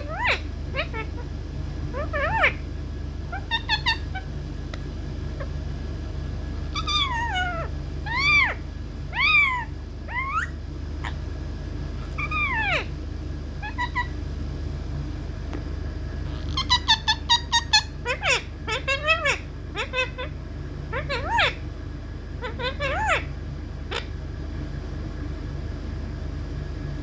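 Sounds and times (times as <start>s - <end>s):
parrot drawn-out calls: 0.0s - 1.3s, 1.9s - 2.6s, 3.3s - 4.3s, 6.7s - 11.2s, 12.0s - 12.9s, 13.6s - 14.2s, 16.2s - 21.6s, 22.4s - 23.3s, 23.9s - 24.1s.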